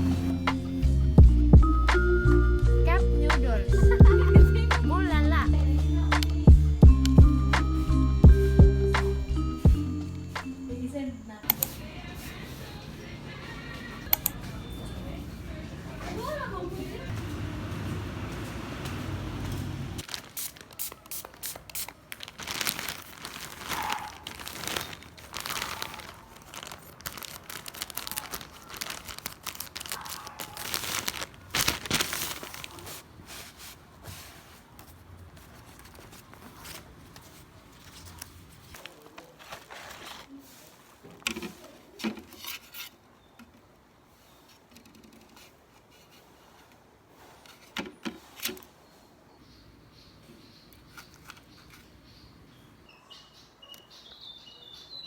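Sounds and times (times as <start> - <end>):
material rustling and crinkling: 19.6 - 43.0
scattered clicks and scrapes: 44.5 - 46.8.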